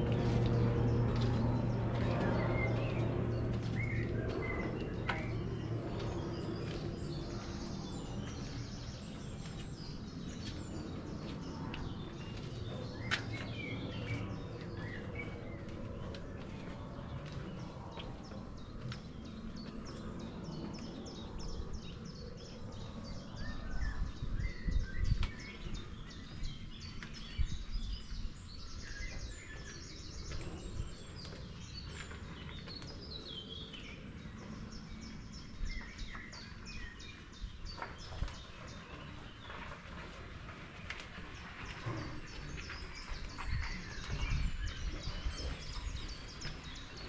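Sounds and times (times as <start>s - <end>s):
low outdoor rumble: 0.0s - 47.0s
woodland birds singing: 0.0s - 47.0s.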